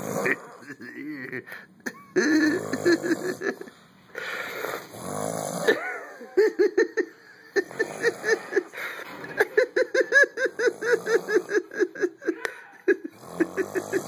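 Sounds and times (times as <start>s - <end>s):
person snoring: 0.0s - 1.6s, 2.2s - 6.2s, 7.6s - 9.2s, 10.4s - 12.0s, 13.0s - 14.0s
stifled giggling: 0.2s - 3.8s, 5.7s - 14.0s.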